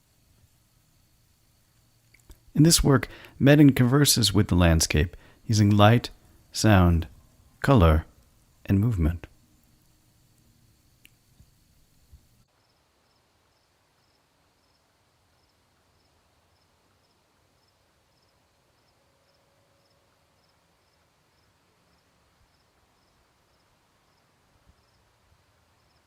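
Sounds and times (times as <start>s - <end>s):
background hiss: 0.0s - 26.0s
insect chirping: 0.0s - 26.0s
click: 10.4s - 11.5s.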